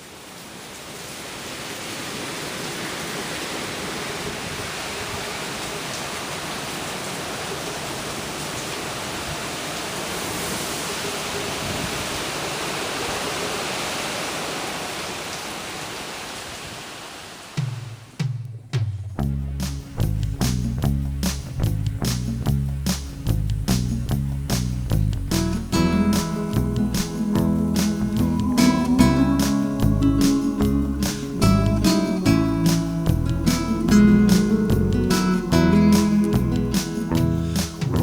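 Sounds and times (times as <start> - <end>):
hurricane wind and rain: 0.0 - 19.2, 21.3 - 38.0
drum and bass music: 18.2 - 38.0.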